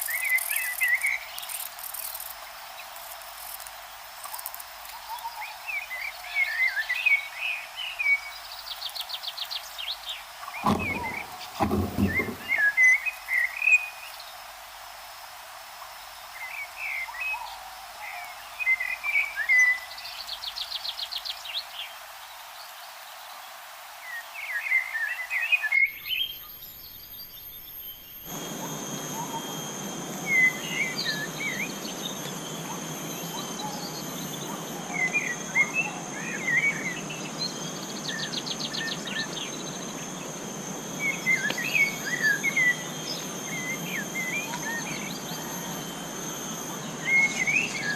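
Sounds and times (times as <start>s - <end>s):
high insect whine: 0.0s - 47.9s
birds chirping: 5.0s - 14.2s, 24.6s - 47.9s
bird trill: 5.1s - 13.1s.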